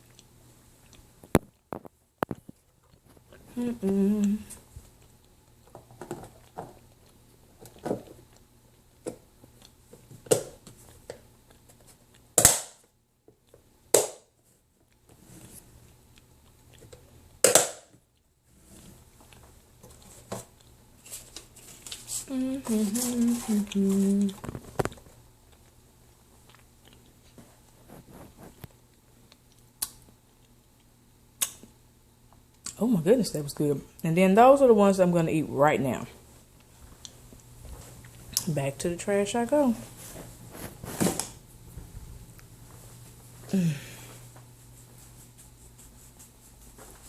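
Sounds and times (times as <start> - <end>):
person chewing crunchy food: 0.0 - 10.0, 10.6 - 12.4, 14.8 - 17.4, 23.7 - 31.7, 36.5 - 38.4
crisp chewing crunches: 23.3 - 31.6.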